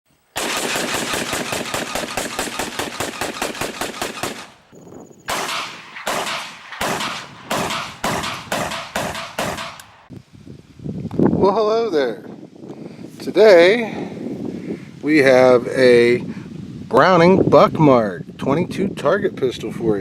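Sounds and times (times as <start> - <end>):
rapid gunfire burst: 0.4 - 4.7, 5.3 - 10.1
single loud gunshots with echo: 5.3 - 10.1.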